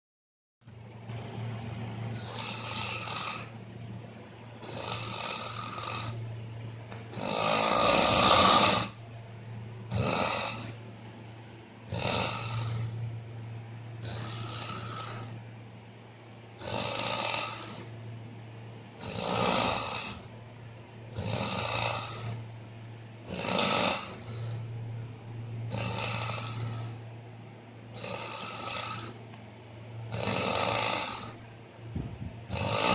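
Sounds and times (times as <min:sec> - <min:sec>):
steady low hum: 0:00.6 - 0:32.9
person snoring loudly: 0:02.1 - 0:03.6, 0:04.6 - 0:06.2, 0:07.1 - 0:09.0, 0:09.9 - 0:10.8, 0:11.9 - 0:13.1, 0:14.0 - 0:15.4, 0:16.6 - 0:18.0, 0:19.0 - 0:20.3, 0:21.2 - 0:22.5, 0:23.2 - 0:24.7, 0:25.7 - 0:27.0, 0:27.9 - 0:29.2, 0:30.1 - 0:31.4, 0:32.5 - 0:32.9.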